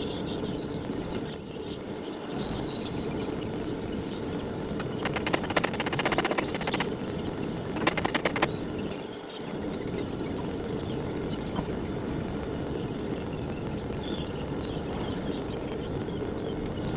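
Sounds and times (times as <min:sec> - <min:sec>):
furnace burners running: 0:00.0 - 0:16.9
rapid rattle of clicks: 0:04.8 - 0:08.5.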